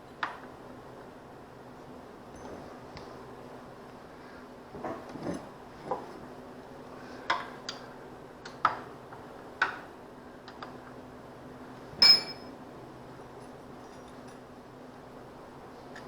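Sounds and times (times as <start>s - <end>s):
metal tools clinking: 12.0s - 12.5s.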